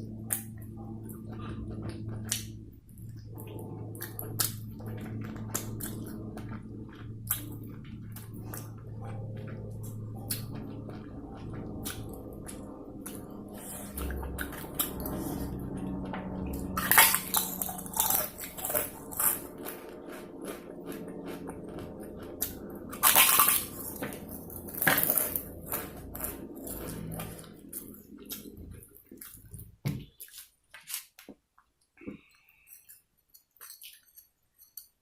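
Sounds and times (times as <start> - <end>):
person chewing food: 0.0 - 35.0.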